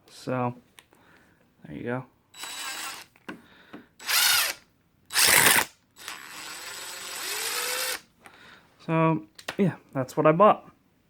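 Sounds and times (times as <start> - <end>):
impact wrench spinning: 2.4 - 3.2, 4.0 - 8.1.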